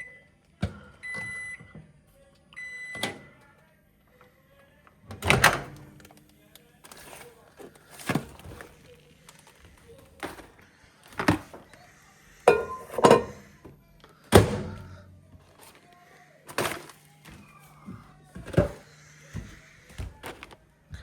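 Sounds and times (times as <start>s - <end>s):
microwave humming: 4.7s - 21.0s
popcorn popping: 12.4s - 13.5s.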